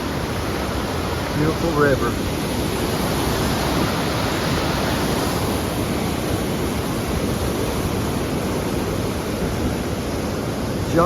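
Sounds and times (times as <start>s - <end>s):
river rushing: 0.0s - 11.0s.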